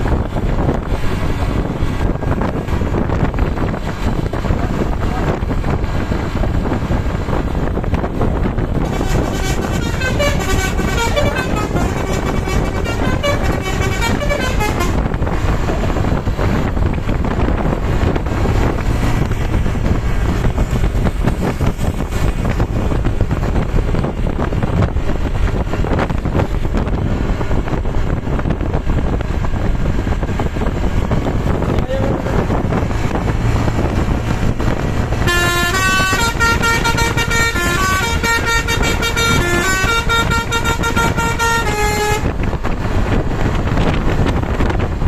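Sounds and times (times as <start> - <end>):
traffic noise: 0.0 - 45.0
wind: 0.0 - 45.0
musical bus air horn: 8.8 - 15.5, 34.0 - 42.6.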